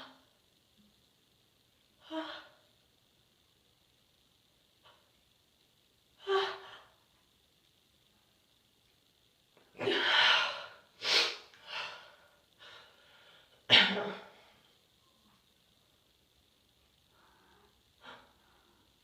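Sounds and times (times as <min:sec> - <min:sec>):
woman sneezing: 0:13.7 - 0:14.3.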